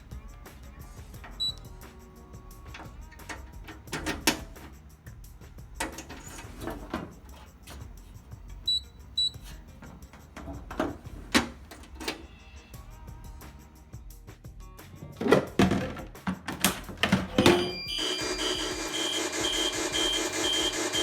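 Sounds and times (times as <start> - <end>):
fire alarm strokes: 1.3 - 1.7, 8.6 - 9.6, 17.4 - 21.0
short high beeps: 17.6 - 21.0.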